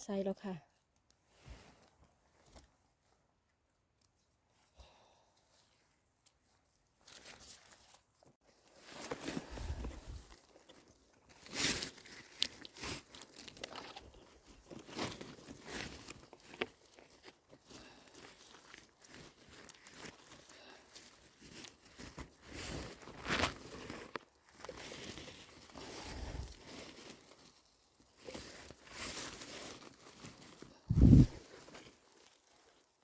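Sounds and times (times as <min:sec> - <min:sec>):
mushrooms being picked: 0:29.8 - 0:31.8.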